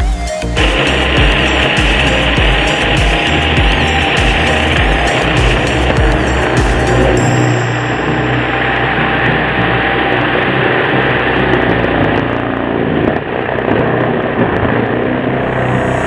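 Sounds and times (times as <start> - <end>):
chainsaw engine running: 0.6 - 8.3.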